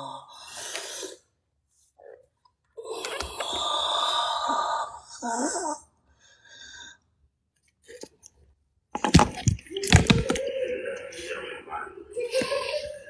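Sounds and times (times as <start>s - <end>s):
sharp knocks or thumps: 9.0s - 10.4s.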